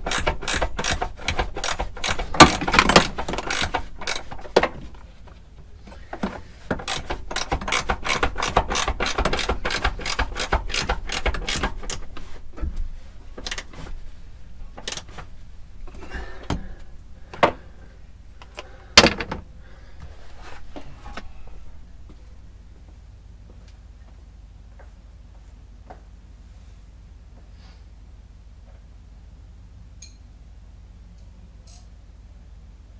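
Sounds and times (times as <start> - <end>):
ratchet wrench clicking: 0.0 - 5.1, 6.1 - 12.4, 13.4 - 13.9, 14.7 - 16.7
tools knocking on metal: 0.0 - 5.1, 6.0 - 14.0, 19.0 - 19.5.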